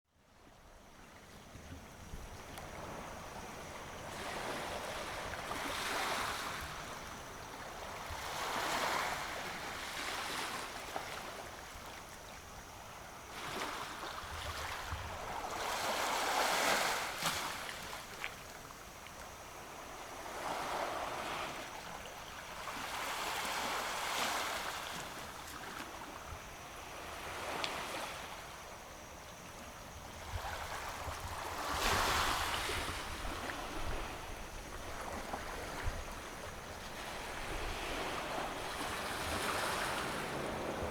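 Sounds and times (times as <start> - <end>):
waves washing onto beach: 36.0 - 40.9.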